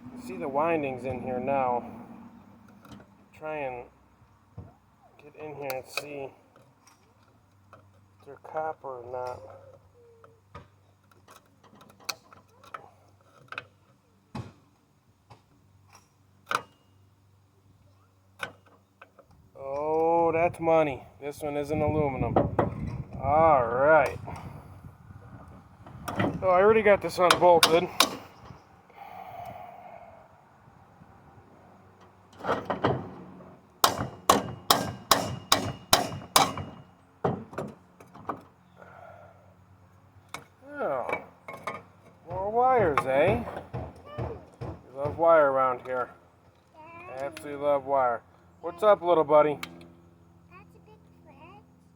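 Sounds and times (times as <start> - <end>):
hammer striking motor housing: 27.1 - 28.6, 33.8 - 37.7
metal knock: 33.8 - 37.7.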